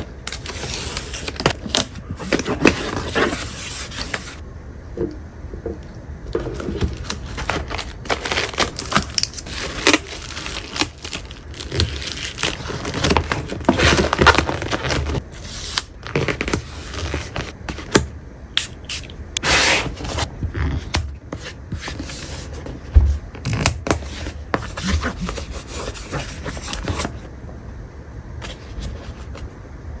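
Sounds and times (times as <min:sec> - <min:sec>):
scraping and rustling of small items: 0:06.3 - 0:17.9.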